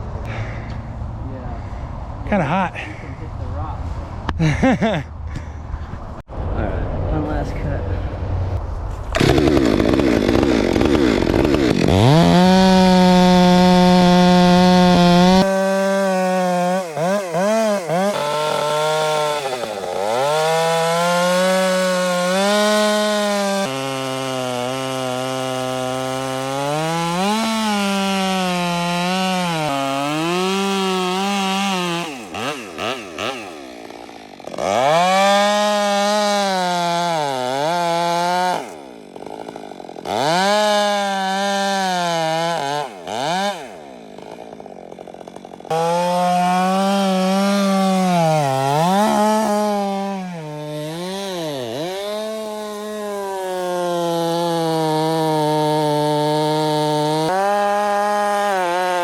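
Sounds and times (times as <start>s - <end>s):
chainsaw cutting wood: 8.9s - 59.0s.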